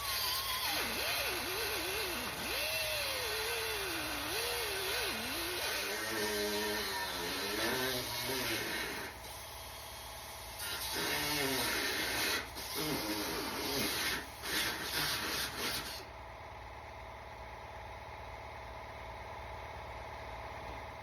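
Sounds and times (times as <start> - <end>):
grinder cutting sheet steel: 0.0 - 9.8, 10.6 - 16.1.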